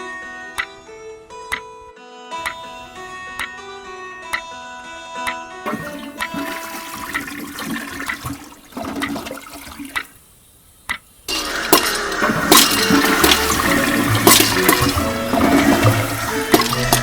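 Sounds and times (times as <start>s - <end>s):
water rushing: 5.7s - 10.2s, 11.4s - 17.0s.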